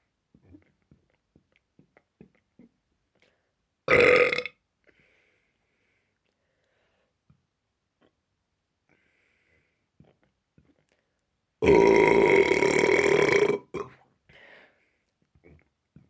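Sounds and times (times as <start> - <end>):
person burping: 3.9 - 4.5, 11.6 - 14.0.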